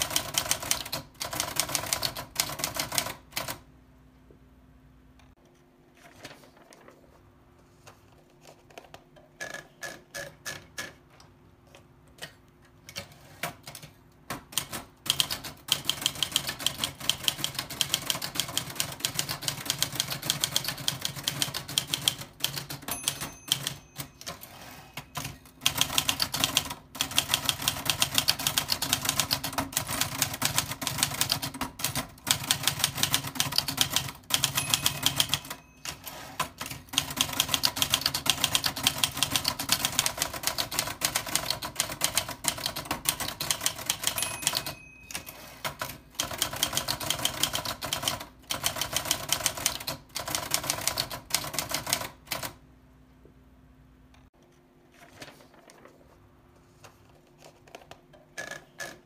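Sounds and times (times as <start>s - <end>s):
typewriter keys clattering: 0.0s - 3.6s, 12.9s - 52.6s.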